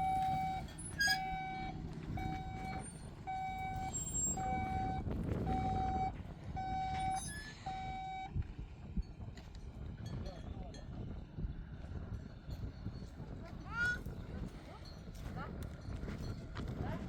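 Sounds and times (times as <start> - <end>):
reversing alarm beeping: 0.0 - 8.4
low engine rumble: 0.0 - 17.0.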